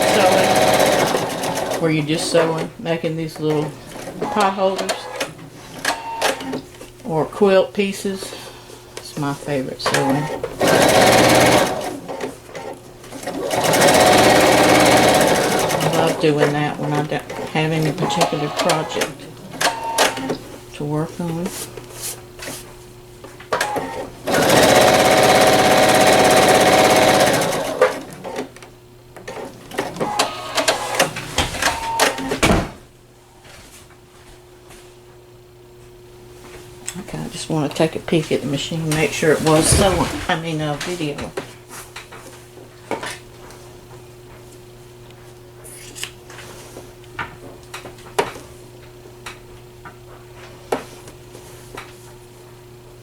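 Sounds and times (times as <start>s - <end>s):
sewing machine stitching fast: 0.0s - 2.7s, 9.9s - 16.7s, 17.3s - 20.4s, 23.6s - 28.5s, 29.3s - 32.3s
low electrical hum: 0.0s - 53.0s.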